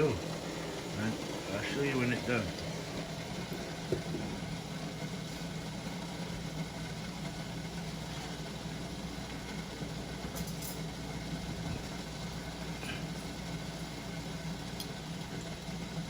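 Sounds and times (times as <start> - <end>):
steady low hum: 0.0 - 8.3.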